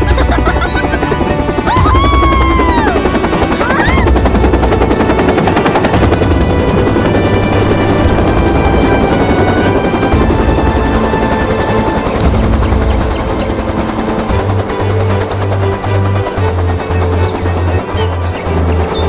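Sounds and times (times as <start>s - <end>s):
background music: 0.0s - 19.0s
cartoon helicopter rotor chopping: 0.0s - 19.0s.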